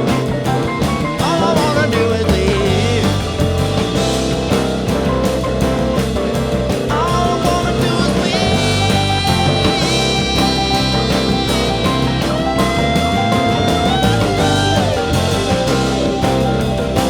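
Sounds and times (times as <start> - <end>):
steady drum beat: 0.0 - 17.0
lead guitar sustained bending notes: 8.4 - 17.0.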